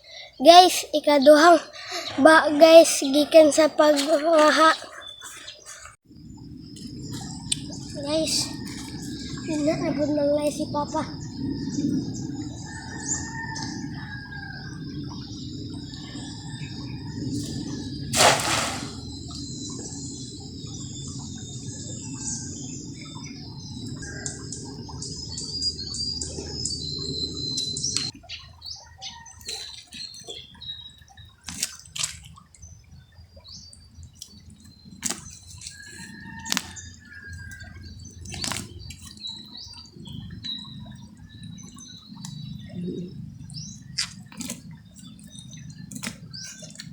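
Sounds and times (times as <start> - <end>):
birds chirping: 0.0 - 31.2
water dripping and splashing: 17.4 - 19.9, 29.4 - 46.9
water rushing: 18.1 - 19.2
loud sudden burst: 18.2 - 19.0.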